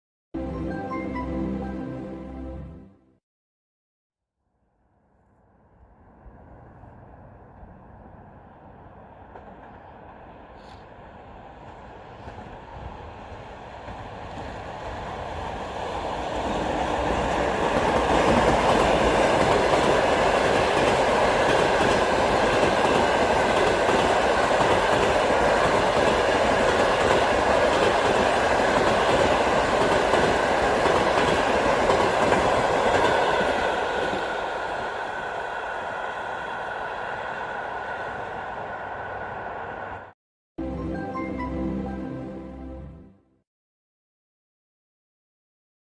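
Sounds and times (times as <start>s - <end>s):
electric train passing: 4.9s - 42.1s
train wheels on rails: 6.4s - 40.1s.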